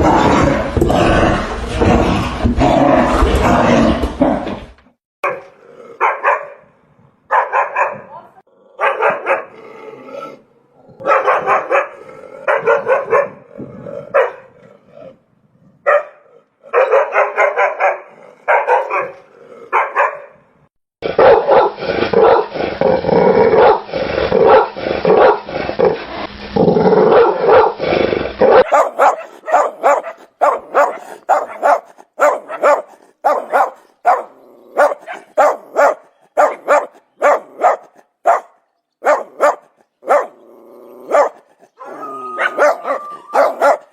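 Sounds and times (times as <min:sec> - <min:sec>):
dogs barking: 0:05.2 - 0:06.7, 0:07.3 - 0:08.1, 0:08.8 - 0:09.6, 0:11.0 - 0:14.6, 0:15.8 - 0:20.4, 0:21.0 - 0:22.5, 0:23.6 - 0:25.5, 0:27.1 - 0:27.8, 0:28.5 - 0:43.9.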